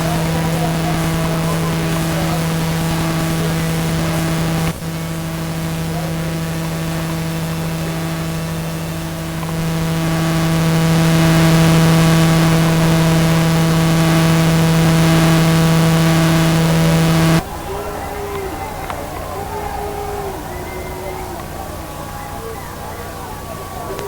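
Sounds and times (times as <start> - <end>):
steady hum with overtones: 0.0 - 24.0.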